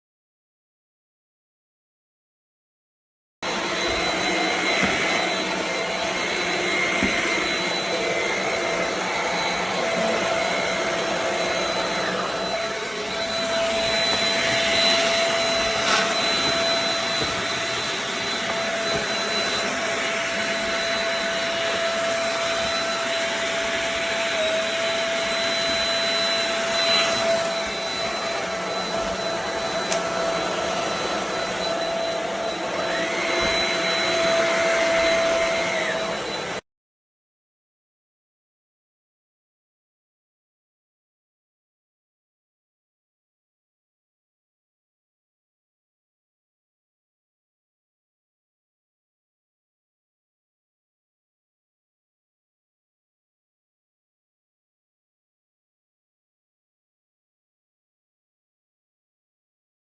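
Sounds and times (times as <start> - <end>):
stick vacuum running: 3.5 - 36.6.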